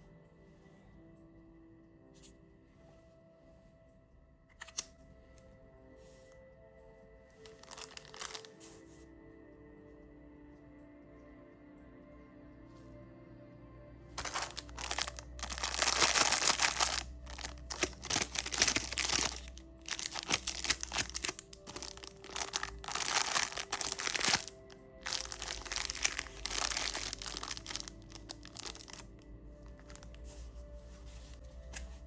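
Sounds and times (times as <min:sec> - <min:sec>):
soft background music: 0:00.0 - 0:32.0
candy wrappers crinkling: 0:07.4 - 0:08.6, 0:14.2 - 0:30.2.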